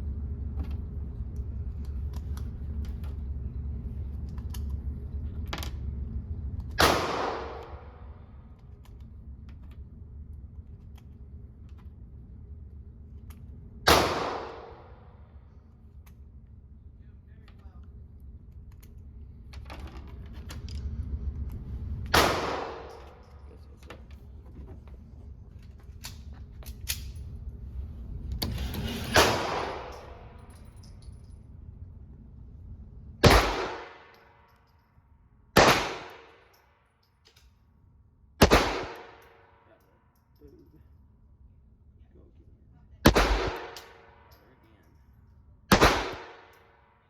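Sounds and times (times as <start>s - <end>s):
low rumble: 0.0s - 36.5s
pistol shots with echo: 6.8s - 8.0s, 13.9s - 14.9s, 22.2s - 23.1s, 33.2s - 34.2s, 35.6s - 36.5s, 38.4s - 39.4s, 43.0s - 44.2s, 45.7s - 46.7s.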